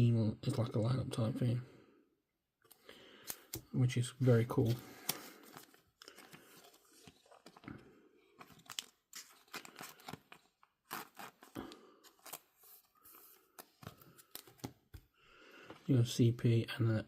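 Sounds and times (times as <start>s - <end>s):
cards being handled: 4.4s - 7.8s, 8.4s - 15.1s
foil wrapper crinkling and tearing: 8.4s - 12.6s.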